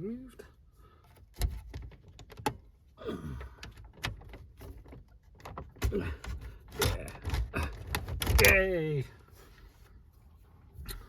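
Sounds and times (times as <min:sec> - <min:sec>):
tools prying out car radio: 0:03.6 - 0:08.7.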